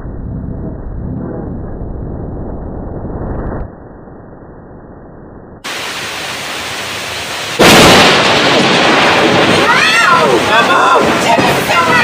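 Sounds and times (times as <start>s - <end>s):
muffled rumble: 0.0s - 5.6s
rain hissing: 5.6s - 12.0s
thunder crash: 7.6s - 12.0s.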